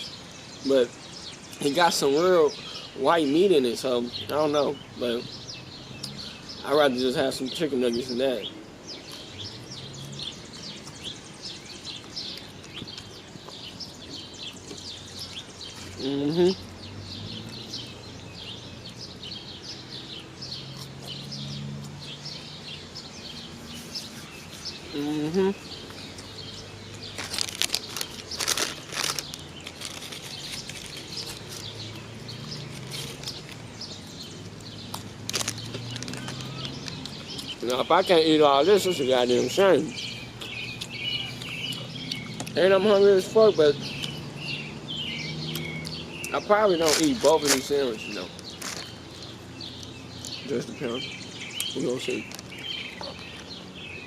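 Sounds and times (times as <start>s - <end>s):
birds chirping: 0.0s - 54.0s
outdoor background noise: 0.0s - 54.0s
food packaging crackling: 25.8s - 38.2s, 45.5s - 50.3s.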